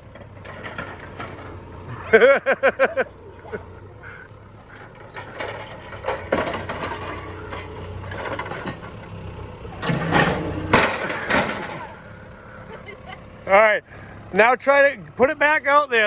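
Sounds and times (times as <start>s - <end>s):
metal clanks and rattles: 0.0s - 3.7s, 4.5s - 12.2s
excavator engine running: 0.0s - 16.0s.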